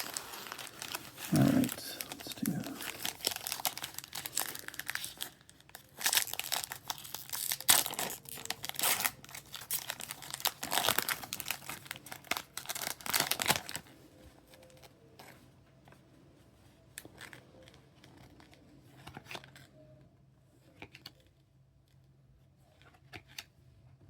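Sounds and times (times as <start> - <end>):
wrapper crinkling and tearing: 0.0 - 13.9.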